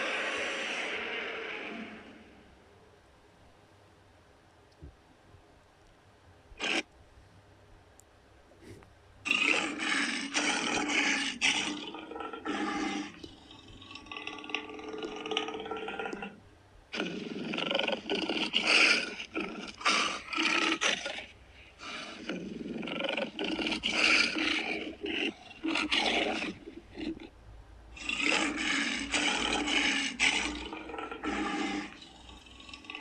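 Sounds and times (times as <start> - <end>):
monster roars: 0.0 - 2.4, 9.3 - 16.4, 17.0 - 21.1, 21.8 - 27.2, 28.0 - 33.0.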